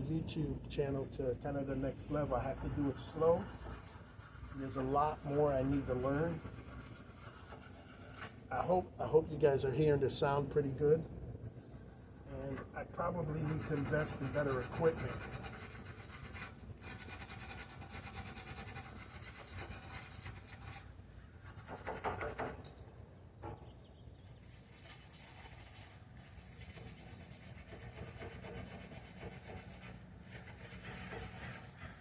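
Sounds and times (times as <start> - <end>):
low scratchy rubbing: 1.5 - 8.8, 11.4 - 21.7.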